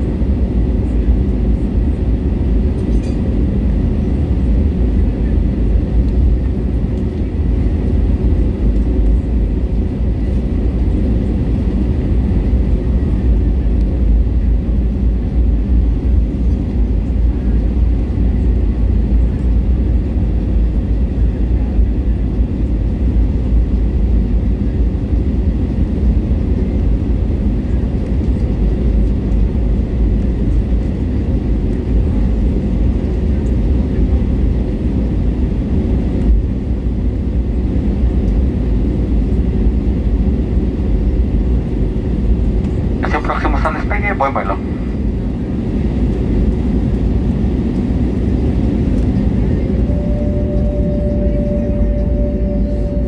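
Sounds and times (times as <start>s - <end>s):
airliner cabin engine rumble: 0.0s - 53.0s
faint steady tones: 47.8s - 53.0s.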